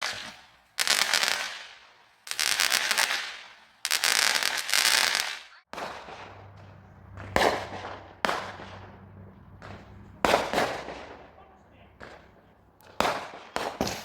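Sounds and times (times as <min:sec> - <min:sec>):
fireworks crackling: 0:00.0 - 0:14.0
loud firework bangs: 0:00.0 - 0:14.0.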